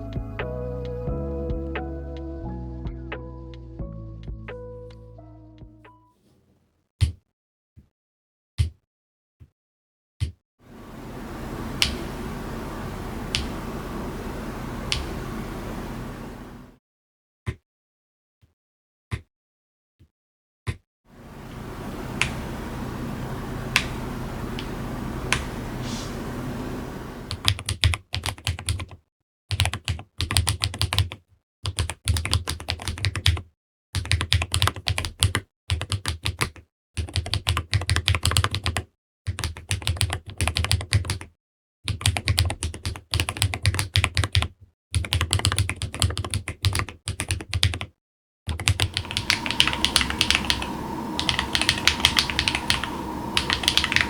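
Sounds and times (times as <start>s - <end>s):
steady low hum: 10.7s - 16.8s, 21.2s - 27.5s, 48.8s - 54.0s
typing on a keyboard: 27.3s - 41.3s, 41.9s - 54.0s.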